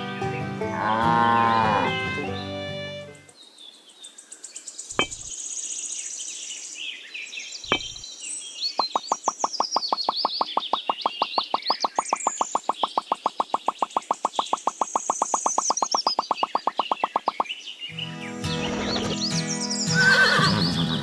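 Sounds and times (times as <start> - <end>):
background music: 0.0 - 3.3, 17.9 - 21.0
cow mooing: 0.8 - 2.0
faint high chirping: 4.2 - 6.2, 7.5 - 18.0
sharp pops: 5.0 - 5.3, 7.7 - 8.0, 8.8 - 17.6
fast even clicks: 8.8 - 17.6.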